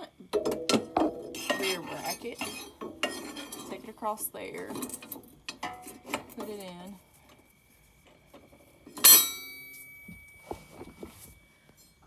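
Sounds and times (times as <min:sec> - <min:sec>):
metal clank ringing: 0:00.3 - 0:06.9, 0:08.9 - 0:10.9.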